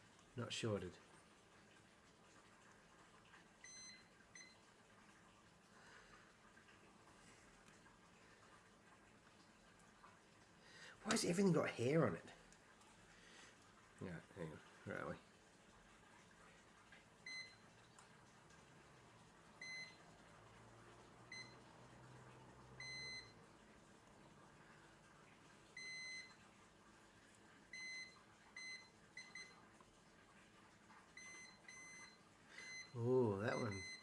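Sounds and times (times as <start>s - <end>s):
multimeter short high beeps: 33.6s - 34.0s.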